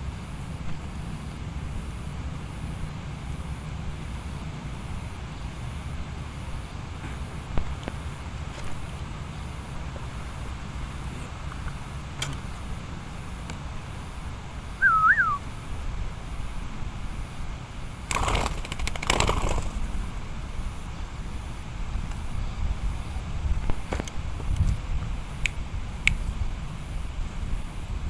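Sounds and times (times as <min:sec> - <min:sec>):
whistled note: 0:14.8 - 0:15.4
wind buffeting microphone: 0:19.0 - 0:28.0.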